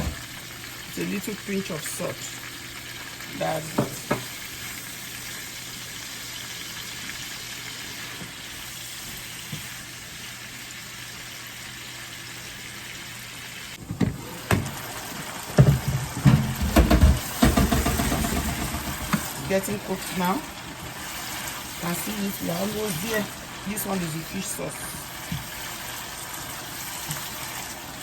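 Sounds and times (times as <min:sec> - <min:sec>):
sauce sizzling in a pan: 0:00.0 - 0:28.0
spoon scraping and knocking pan: 0:15.6 - 0:19.3.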